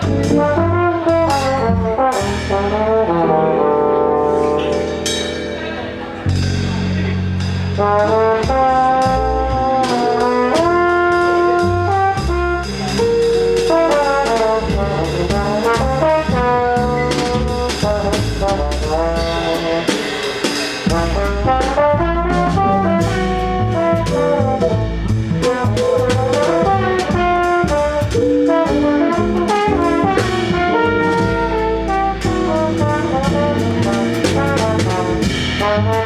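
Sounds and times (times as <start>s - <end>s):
bass: 0.0s - 36.0s
drums: 0.0s - 36.0s
horns playing jazz melody: 0.0s - 36.0s
cymbal strokes: 4.5s - 6.6s.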